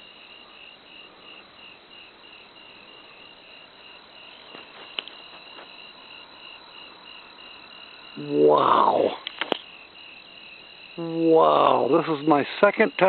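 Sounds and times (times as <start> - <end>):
cricket chirping: 0.0 - 13.0
sharp click: 9.2 - 9.7.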